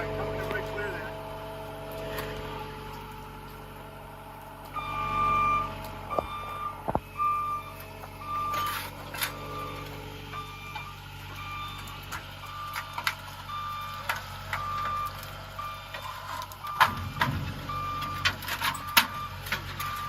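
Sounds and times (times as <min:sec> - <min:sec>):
engine running: 0:00.0 - 0:20.0
reversing alarm beeping: 0:04.6 - 0:20.0.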